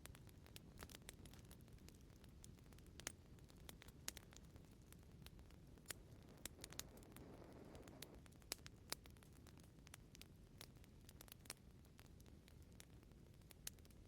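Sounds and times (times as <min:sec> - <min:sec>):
wood fire crackling: 0:00.0 - 0:14.0
soft whoosh of flames: 0:00.5 - 0:10.3.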